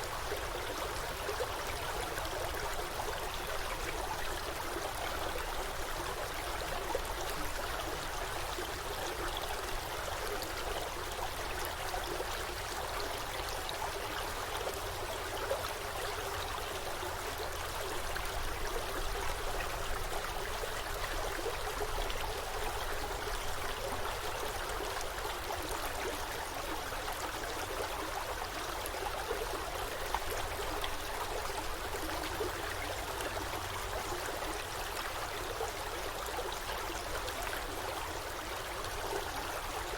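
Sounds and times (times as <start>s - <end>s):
stream flowing over rocks: 0.0s - 39.9s.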